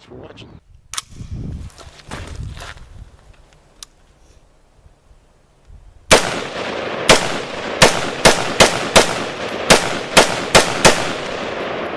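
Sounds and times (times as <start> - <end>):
continuous hiss: 1.7 - 11.9
loud sharp bangs: 6.1 - 11.9.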